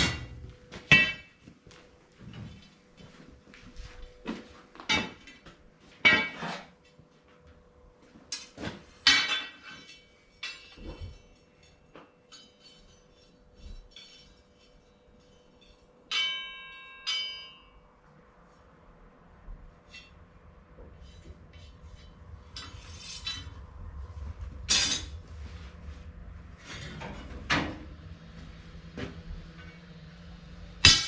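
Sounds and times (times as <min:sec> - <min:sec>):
ringing metal strikes: 0:00.0 - 0:01.4, 0:08.4 - 0:18.1, 0:30.6 - 0:31.0
faint steady hum: 0:00.0 - 0:31.0
steel tools clanking: 0:08.3 - 0:17.8, 0:20.9 - 0:23.7, 0:24.7 - 0:25.2.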